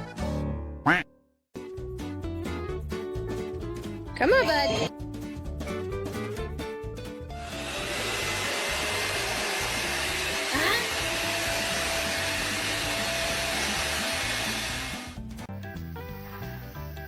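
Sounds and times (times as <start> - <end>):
air blower rushing: 7.4 - 15.2.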